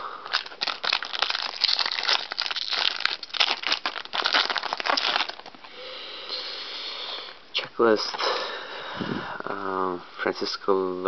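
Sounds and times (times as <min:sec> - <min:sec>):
foil wrapper crinkling: 0:00.2 - 0:05.6.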